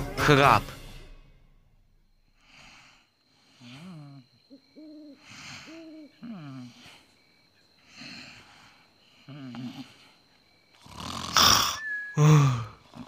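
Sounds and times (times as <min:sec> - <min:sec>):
cartoon pig snoring: 0:09.3 - 0:10.0, 0:10.8 - 0:13.0
hooting whistle-like tones: 0:11.4 - 0:13.0.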